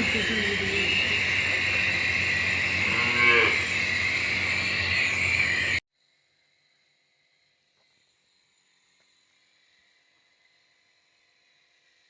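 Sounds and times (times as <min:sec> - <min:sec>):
nebulizer machine hissing: 0:00.0 - 0:05.8
calf mooing: 0:02.7 - 0:03.6.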